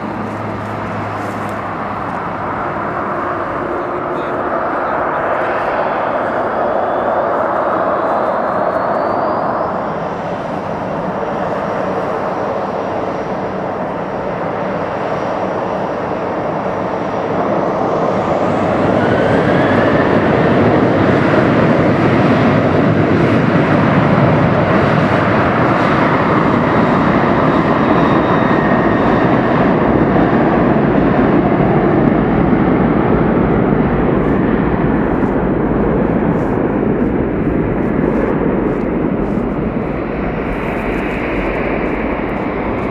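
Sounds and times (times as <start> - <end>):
jet engines running: 0.0 - 42.9
faint rising whine: 27.8 - 42.9.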